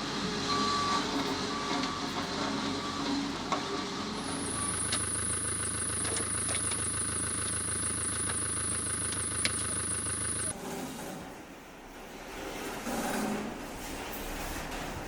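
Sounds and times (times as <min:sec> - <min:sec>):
machinery engine running: 0:04.2 - 0:10.5
scattered clicks: 0:04.2 - 0:10.5
thin high whine: 0:04.2 - 0:10.5.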